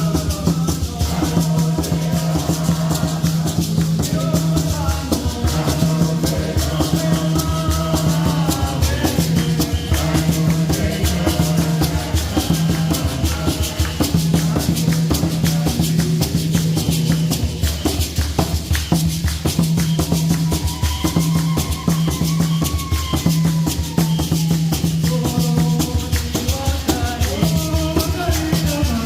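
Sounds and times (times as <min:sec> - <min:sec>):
repeating bass line: 0:00.0 - 0:17.8
rattle-like percussion rhythm: 0:00.0 - 0:29.0.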